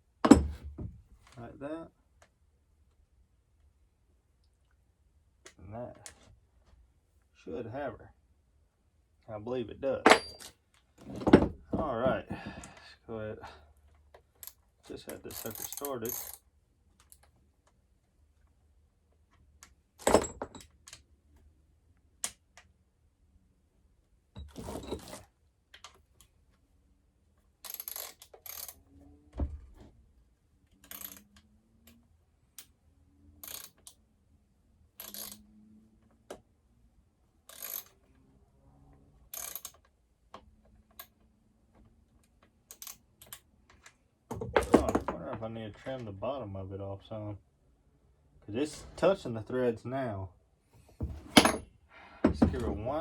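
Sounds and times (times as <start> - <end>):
dull thud: 52.2 - 52.9.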